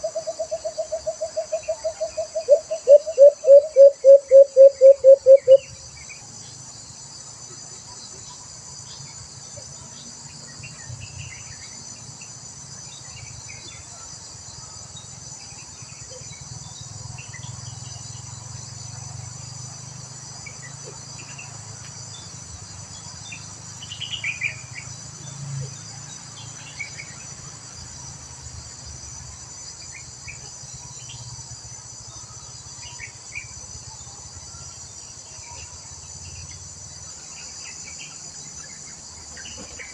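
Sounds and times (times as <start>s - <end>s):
short insect chirps: 0.0s - 6.6s
insects buzzing: 0.0s - 39.9s
rapid pulsing insect call: 0.0s - 39.9s.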